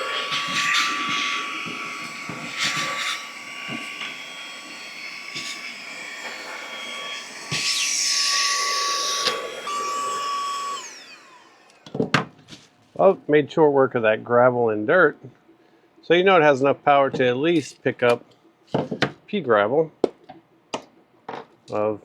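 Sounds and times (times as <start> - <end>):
mini vacuum motor whine: 0.0 - 12.1.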